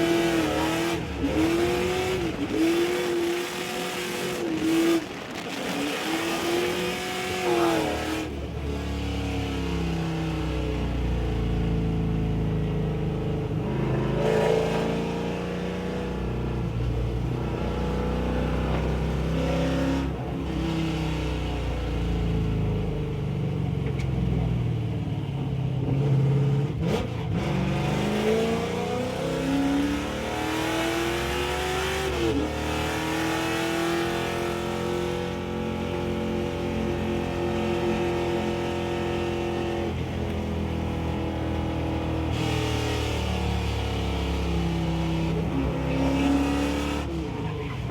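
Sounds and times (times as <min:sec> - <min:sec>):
race car engine: 0:00.0 - 0:47.9.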